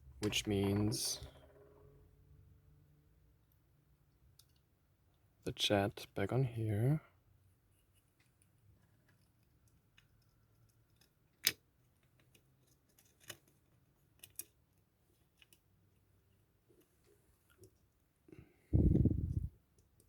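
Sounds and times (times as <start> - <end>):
small metal parts clicking: 9.0 - 14.6.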